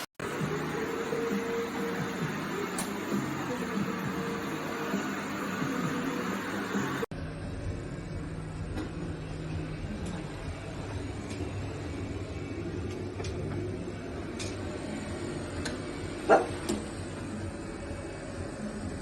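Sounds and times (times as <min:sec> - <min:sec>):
low machine hum: 0:00.2 - 0:19.0
dog barking: 0:16.3 - 0:16.6.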